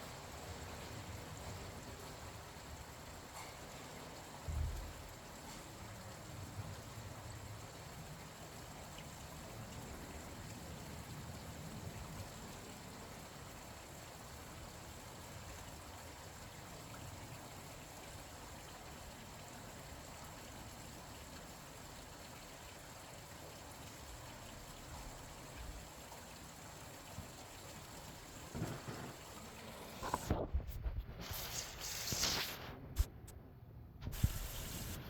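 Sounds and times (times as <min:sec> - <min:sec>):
steady rain falling: 0:00.0 - 0:33.1, 0:34.0 - 0:35.0
irregular knocks and rustles: 0:28.5 - 0:33.1.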